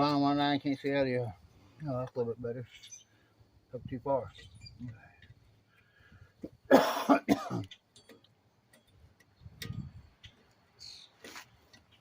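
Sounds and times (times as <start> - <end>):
man clearing throat: 6.7 - 7.7
faint metallic clicks: 7.6 - 12.0.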